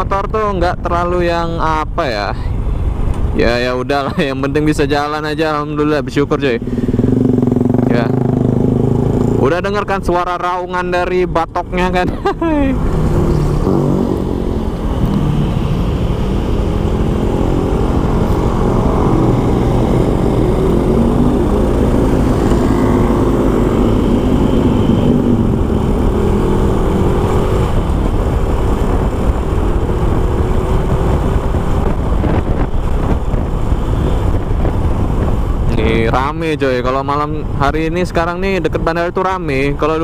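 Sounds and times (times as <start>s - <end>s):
motorcycle engine running: 6.7s - 9.6s.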